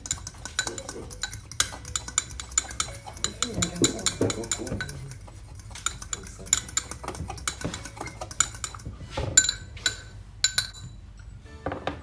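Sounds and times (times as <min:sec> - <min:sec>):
utensil clinking against a dish: 0:00.0 - 0:11.3.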